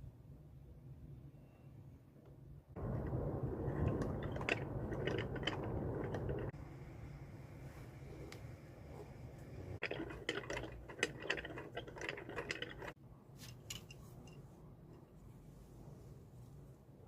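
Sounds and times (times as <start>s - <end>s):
mechanical clicking and rattling: 2.8s - 6.6s, 9.8s - 13.0s.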